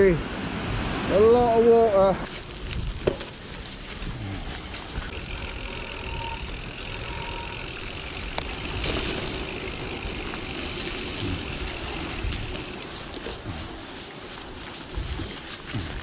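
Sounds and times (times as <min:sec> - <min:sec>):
wet bike tyres hissing: 0:02.1 - 0:16.0
wind buffeting microphone: 0:02.4 - 0:05.8, 0:08.4 - 0:16.0.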